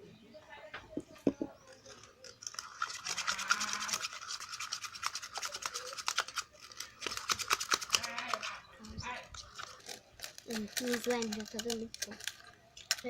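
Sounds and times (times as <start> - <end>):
slime stirred with scraping: 1.7 - 12.6.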